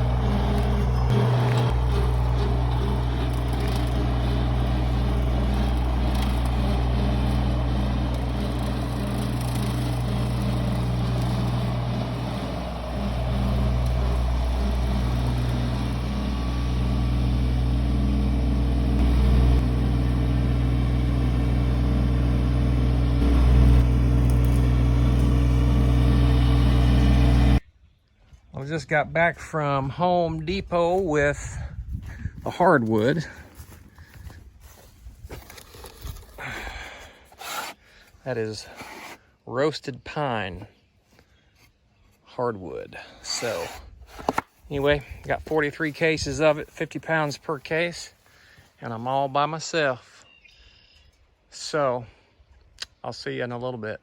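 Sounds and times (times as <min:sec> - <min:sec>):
vehicle engine droning: 0:00.0 - 0:27.6.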